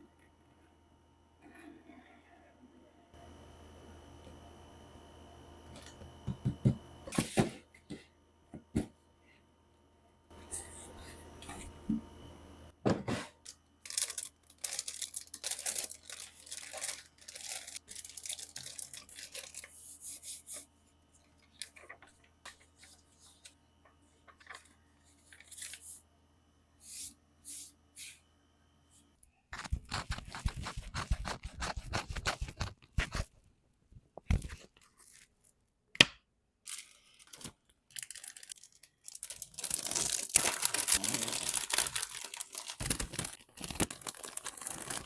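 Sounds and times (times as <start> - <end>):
rapid plastic crackling: 13.8 - 19.8, 36.7 - 45.0
plastic packaging crinkling: 13.8 - 20.0, 29.6 - 33.3, 36.6 - 45.0.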